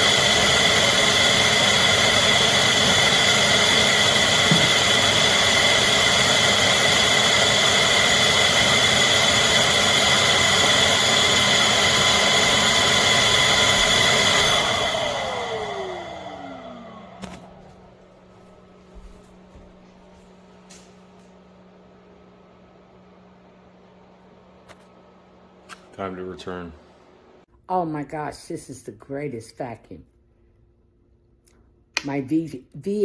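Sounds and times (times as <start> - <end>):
motor winding down whine: 0.0 - 18.4
stick vacuum cleaner running: 0.0 - 27.4.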